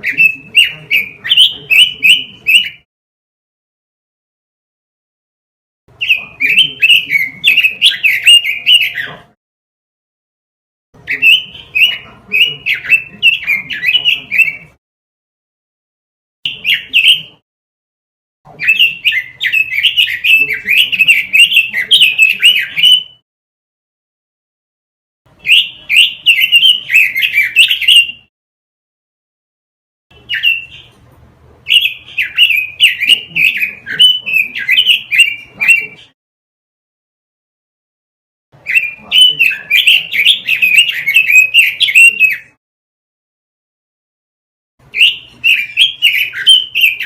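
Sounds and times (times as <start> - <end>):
bird warbling: 6.0 - 9.3, 31.7 - 36.1, 38.6 - 42.5, 44.9 - 47.0.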